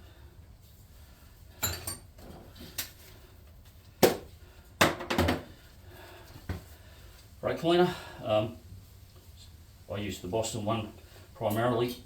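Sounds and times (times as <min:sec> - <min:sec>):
metal tools clinking on workbench: 0:01.6 - 0:02.1.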